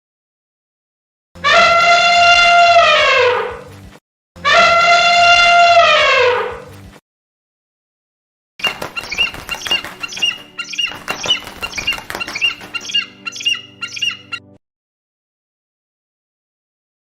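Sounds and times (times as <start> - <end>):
high squeaky animal calls: 1.4 - 3.7, 4.4 - 6.7, 8.6 - 14.6.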